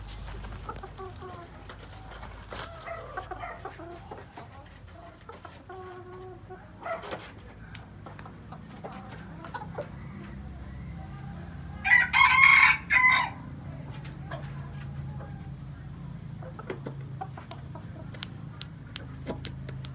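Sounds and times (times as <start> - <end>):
soft clucking: 0.2 - 10.7, 13.8 - 19.9
rooster crowing: 9.9 - 13.7.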